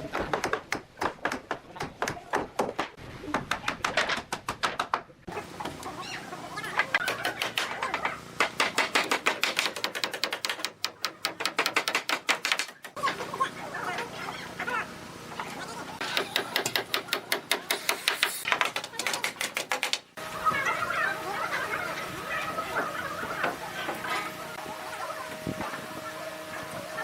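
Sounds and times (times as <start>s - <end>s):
hand tools tapping wood: 0.1s - 5.1s, 6.9s - 13.0s, 16.1s - 20.1s.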